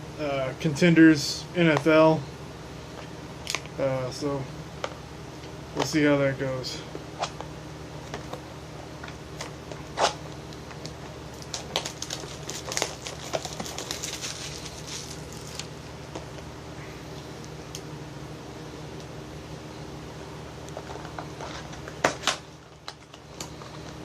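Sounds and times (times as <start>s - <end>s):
plastic wrapping crinkling and tearing: 10.8s - 15.7s.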